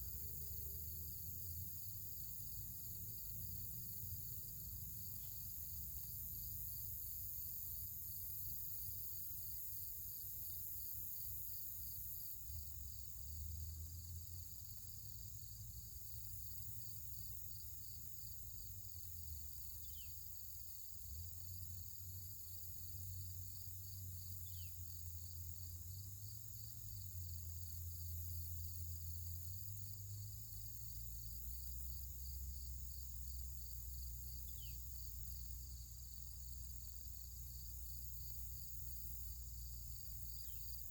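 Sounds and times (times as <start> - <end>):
high-pitched insect chirping: 16.9 - 21.0, 23.6 - 27.8, 31.5 - 40.9.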